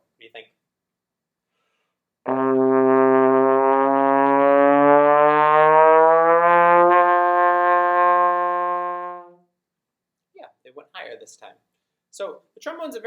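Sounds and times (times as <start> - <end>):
trombone note gliding upward: 2.3 - 9.4.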